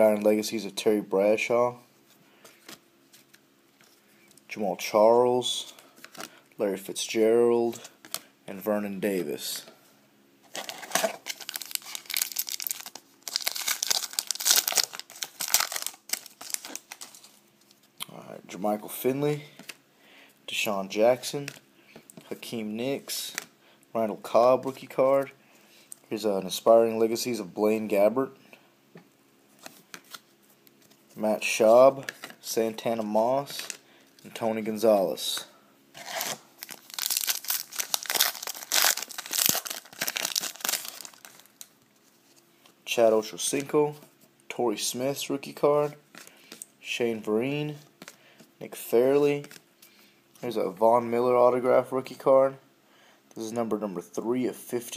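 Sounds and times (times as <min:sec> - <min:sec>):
wrapper tearing and crinkling: 0:10.5 - 0:17.4, 0:36.0 - 0:41.7.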